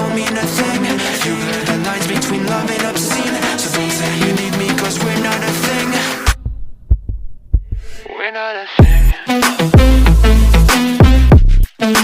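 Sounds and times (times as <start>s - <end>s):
background music: 0.0s - 6.4s, 8.0s - 12.0s
deep short thumps: 6.3s - 8.0s.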